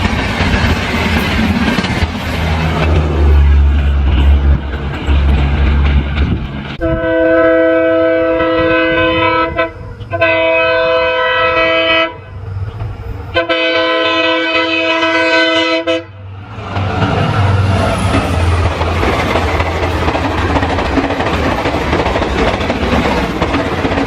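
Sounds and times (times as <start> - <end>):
train rumble: 0.0 - 24.0
locomotive horn blasts: 6.8 - 12.3, 13.3 - 16.2.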